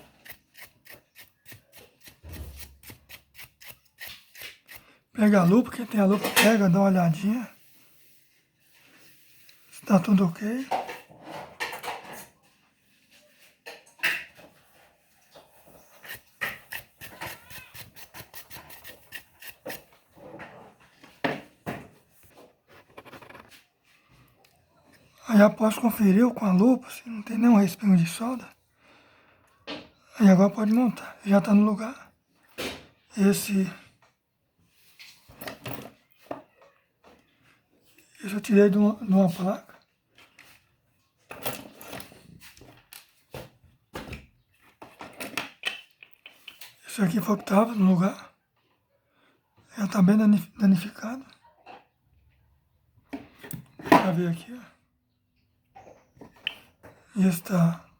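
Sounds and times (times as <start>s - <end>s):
clicks and taps of handling tools: 44.8s - 46.8s.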